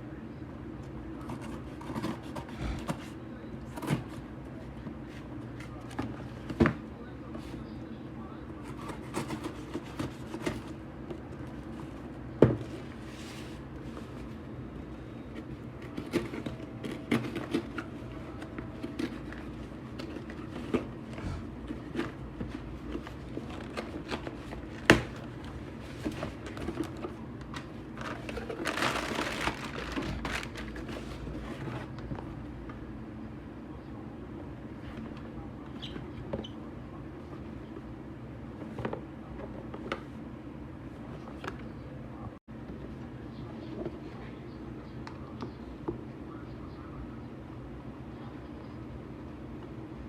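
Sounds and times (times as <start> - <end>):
steady low hum: 0.0 - 50.0
plastic crinkling: 22.9 - 31.9.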